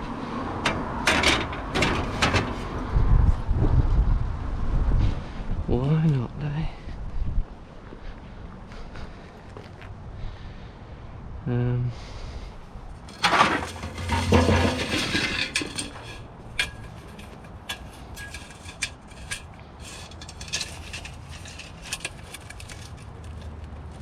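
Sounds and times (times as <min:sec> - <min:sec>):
scrap rattling clatter: 0:00.6 - 0:02.8, 0:13.0 - 0:24.0.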